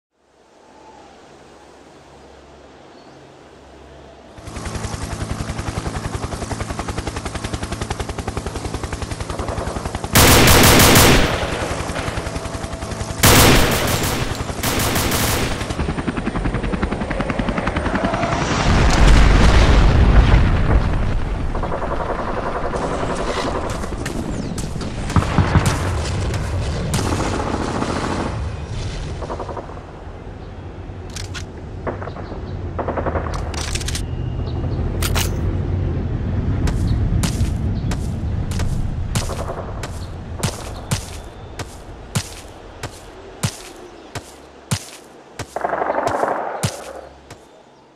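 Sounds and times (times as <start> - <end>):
automatic gunfire: 10.2 - 12.4, 13.2 - 15.9
sharp gunshots: 10.2 - 12.4, 13.2 - 16.0.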